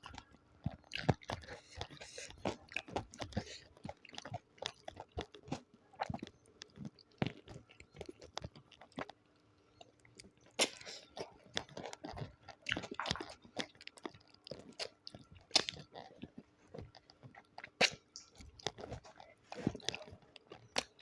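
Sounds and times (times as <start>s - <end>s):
food crunching in mouth: 0.0s - 21.0s.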